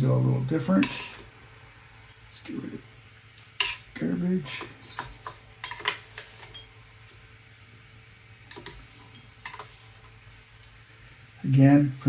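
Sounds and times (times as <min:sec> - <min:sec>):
faint steady low hum: 0:00.0 - 0:12.0.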